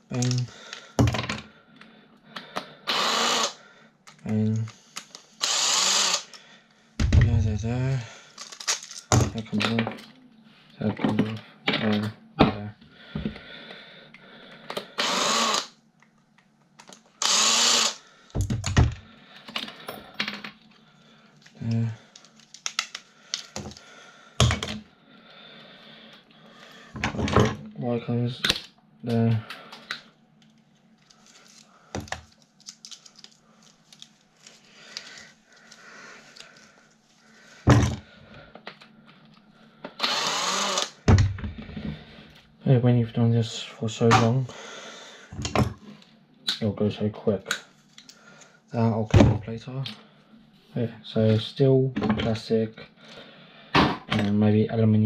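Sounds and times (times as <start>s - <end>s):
cordless drill whirring: 2.9s - 3.6s, 5.4s - 6.4s, 15.0s - 15.8s, 17.2s - 18.0s, 40.0s - 41.0s
loud rasping noise: 2.9s - 3.6s, 5.4s - 6.4s, 15.0s - 15.7s, 40.0s - 41.0s
metal parts knocking and clattering: 18.4s - 20.6s
small plastic and metal clicks: 21.7s - 23.8s.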